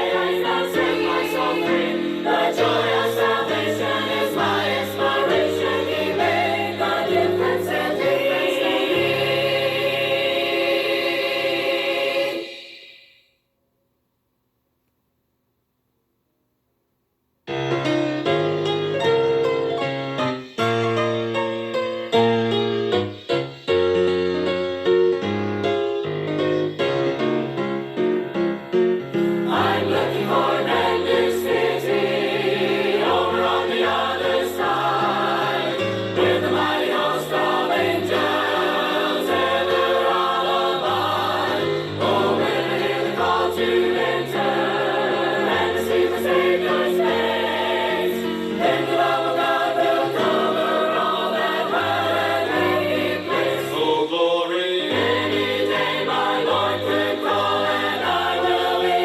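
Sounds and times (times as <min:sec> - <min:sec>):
choir singing gospel: 0:00.0 - 0:13.2, 0:29.1 - 0:59.0.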